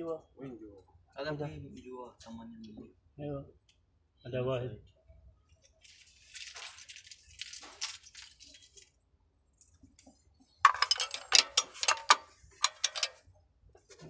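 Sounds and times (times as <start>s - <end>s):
small metal pieces clinking: 5.8s - 9.0s, 10.7s - 13.2s.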